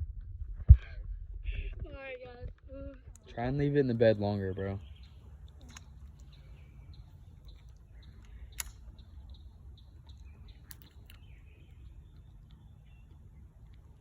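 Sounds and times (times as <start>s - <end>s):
steady low rumble: 0.0s - 14.0s
faint bird chirps: 3.3s - 14.0s
sharp clicks: 5.0s - 14.0s.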